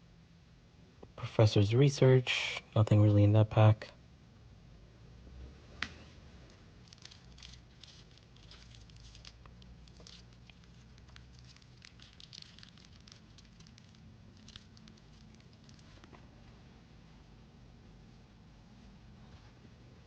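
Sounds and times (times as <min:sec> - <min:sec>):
trading cards rustling: 0:06.8 - 0:16.3.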